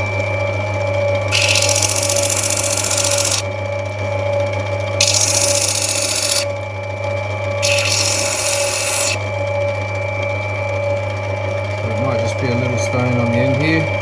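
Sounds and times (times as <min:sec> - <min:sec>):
grinder humming: 0:01.2 - 0:03.5, 0:05.0 - 0:06.5, 0:07.6 - 0:09.4
stone grinding hiss: 0:01.3 - 0:03.4, 0:05.0 - 0:06.5, 0:07.6 - 0:09.2.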